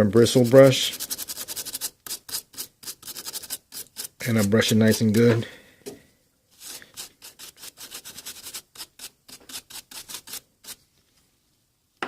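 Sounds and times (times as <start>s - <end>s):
brush scrubbing circuit board: 0.2s - 5.3s, 6.6s - 10.8s.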